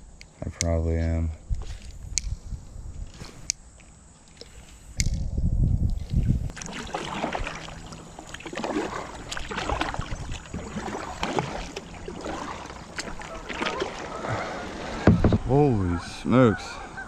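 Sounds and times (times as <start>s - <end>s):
water splashing around paddle: 6.2s - 15.9s.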